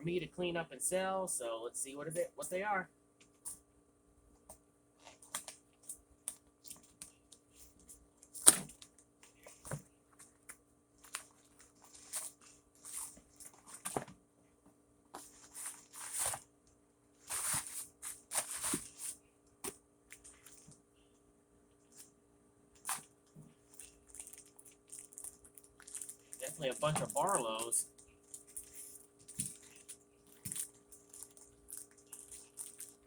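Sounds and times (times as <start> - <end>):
packing rustling and tearing: 11.0 - 14.1, 15.2 - 16.5, 17.2 - 19.2, 22.8 - 33.0.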